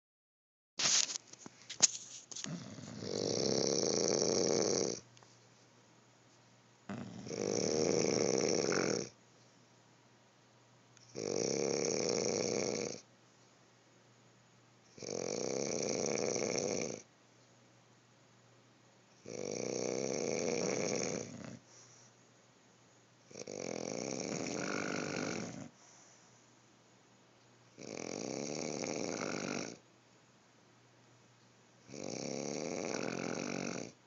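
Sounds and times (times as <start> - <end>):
person snoring: 2.4 - 5.0, 6.9 - 9.2, 11.1 - 13.1, 14.9 - 17.1, 19.2 - 21.7, 23.3 - 25.8, 27.8 - 29.8, 31.9 - 34.0.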